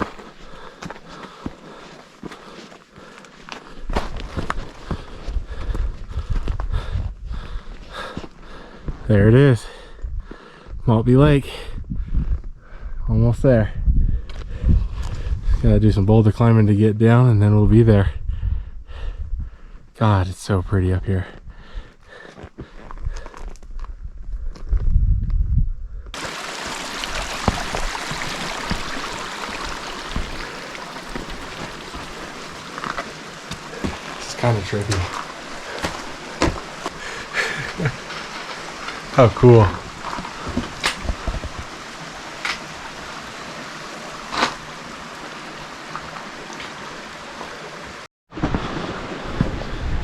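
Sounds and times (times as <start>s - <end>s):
water rushing: 26.2s - 48.1s.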